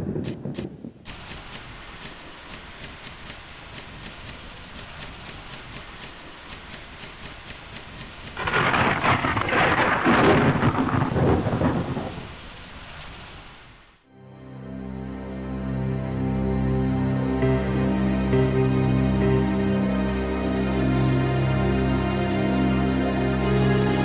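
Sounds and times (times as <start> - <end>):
steady rain: 0.3 - 13.9
rolling thunder: 8.4 - 12.4.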